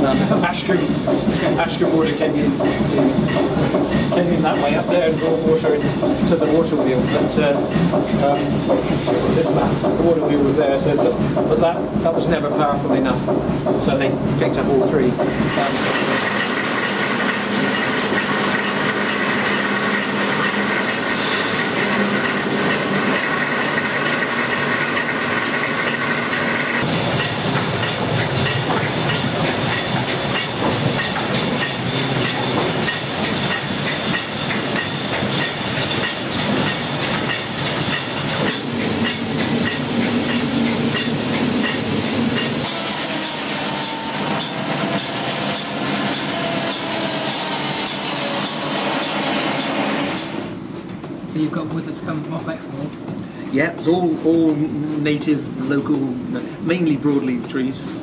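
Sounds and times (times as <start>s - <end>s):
sawmill machinery clattering: 0.0s - 58.0s.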